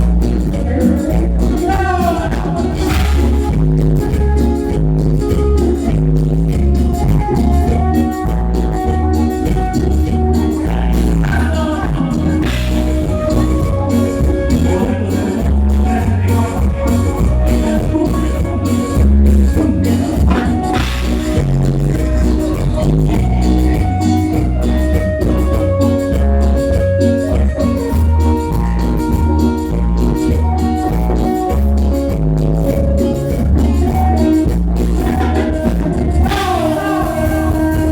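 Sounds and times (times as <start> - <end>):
bass guitar line: 0.0 - 37.9
guitar melody: 0.0 - 37.9
live latin dance band: 0.0 - 37.9
steady drum beat: 0.0 - 37.9.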